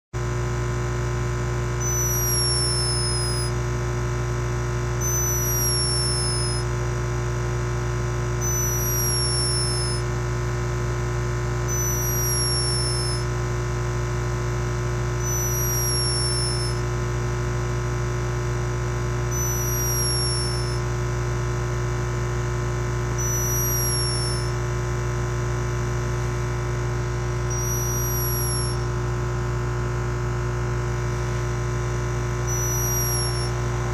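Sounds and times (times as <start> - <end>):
steady electrical hum: 0.3 - 33.9
hummingbird snoring whistle: 1.8 - 3.6, 4.9 - 6.7, 8.4 - 10.1, 11.6 - 13.3, 15.2 - 16.9, 19.3 - 20.9, 23.1 - 24.6, 27.5 - 28.9, 32.4 - 33.9.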